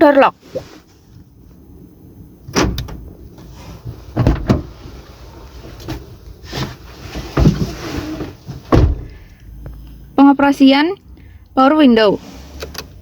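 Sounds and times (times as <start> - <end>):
car door locks clunking: 2.5 - 3.2, 4.1 - 4.7.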